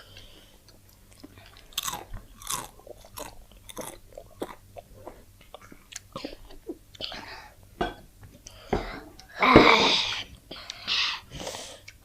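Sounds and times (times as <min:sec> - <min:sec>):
crunchy food being chewed: 0:00.2 - 0:07.1.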